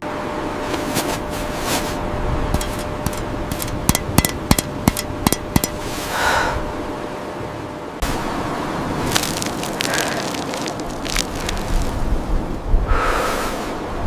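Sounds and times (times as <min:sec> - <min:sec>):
sharp knocks: 0:02.6 - 0:05.8.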